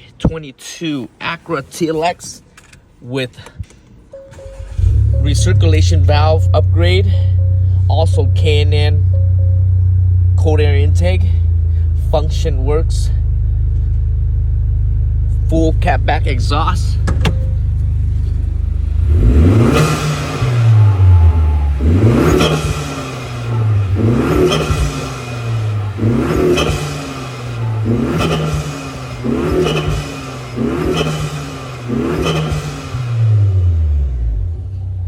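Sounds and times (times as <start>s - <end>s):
car engine revving: 4.3s - 12.4s, 13.2s - 35.0s
air rush on throttle lift: 18.6s - 33.3s.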